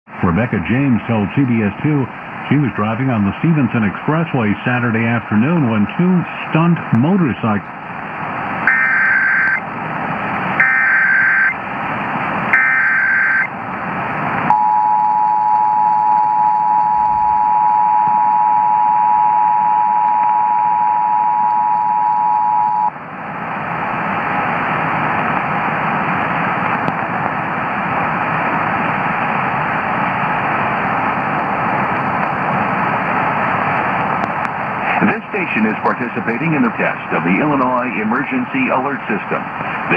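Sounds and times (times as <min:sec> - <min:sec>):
radio static hiss: 0:00.1 - 0:14.5, 0:16.8 - 0:39.9
data tone bursts: 0:08.7 - 0:09.6, 0:10.6 - 0:11.6, 0:12.6 - 0:13.5
two-tone attention signal: 0:08.7 - 0:09.6, 0:10.6 - 0:11.6, 0:12.6 - 0:13.5.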